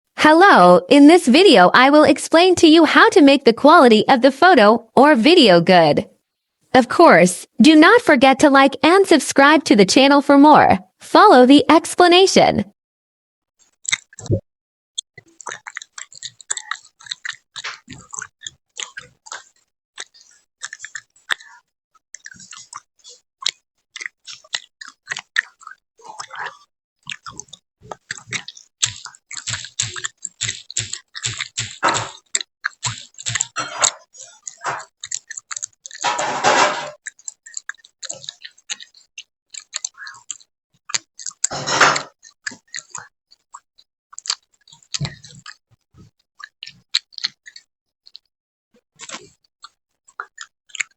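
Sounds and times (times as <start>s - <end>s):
gum chewing smacks: 13.7s - 14.4s, 15.1s - 36.0s, 37.0s - 48.3s, 49.0s - 50.9s
gum squelches: 13.7s - 14.4s, 15.0s - 50.9s.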